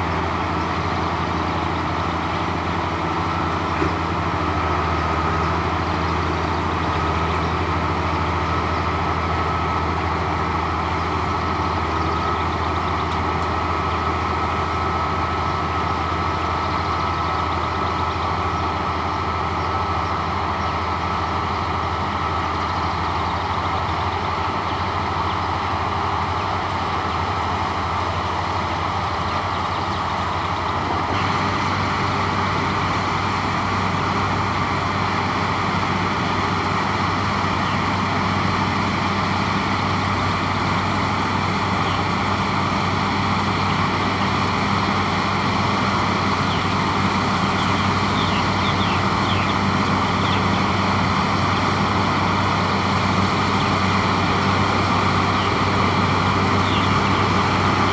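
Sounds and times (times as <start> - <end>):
diesel farm machinery running: 0.0 - 57.9.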